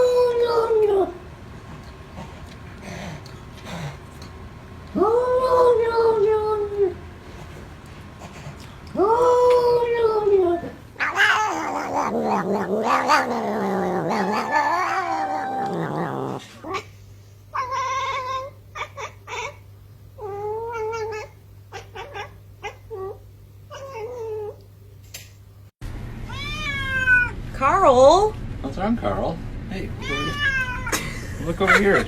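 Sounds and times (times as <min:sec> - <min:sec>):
low steady hum: 0:00.0 - 0:32.0
cat yowling: 0:09.0 - 0:16.9, 0:17.5 - 0:19.6, 0:20.2 - 0:24.6, 0:26.3 - 0:27.4, 0:30.0 - 0:31.0
cat meowing: 0:11.0 - 0:16.8, 0:26.3 - 0:27.4, 0:30.0 - 0:31.0.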